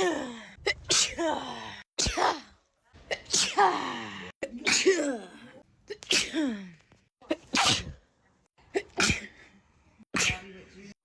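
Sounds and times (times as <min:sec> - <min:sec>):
person sneezing: 0:02.0 - 0:02.5, 0:03.1 - 0:05.2, 0:07.3 - 0:08.0, 0:08.8 - 0:09.4, 0:10.2 - 0:10.5.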